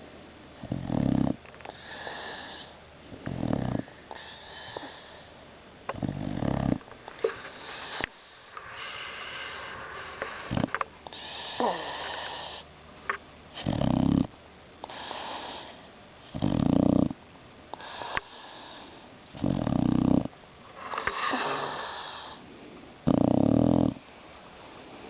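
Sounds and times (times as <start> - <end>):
dog snoring: 0.6 - 12.7, 13.5 - 22.4, 23.0 - 24.1.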